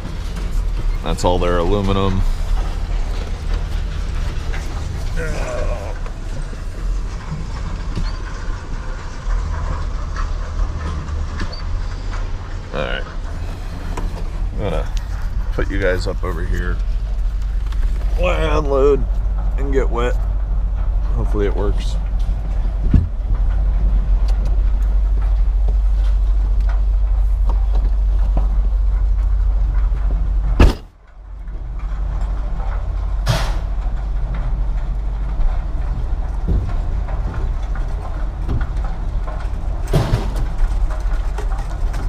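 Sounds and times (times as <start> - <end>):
faint rattles and clicks: 0.0 - 42.0
truck engine and tyres rumbling: 0.0 - 42.0
thump: 22.8 - 23.2, 30.6 - 30.9, 33.2 - 33.7.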